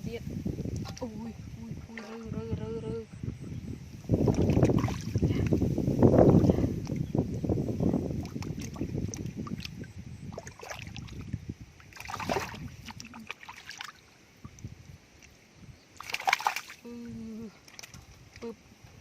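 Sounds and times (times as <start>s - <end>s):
water splashes: 4.2s - 7.2s, 7.8s - 18.6s
hands sloshing in mud: 8.1s - 14.1s, 16.0s - 16.8s.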